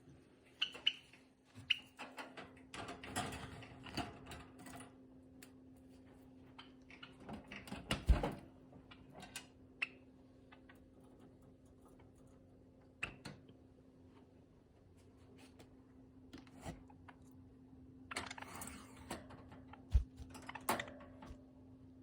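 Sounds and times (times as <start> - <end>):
loud thump: 20.0 - 20.3.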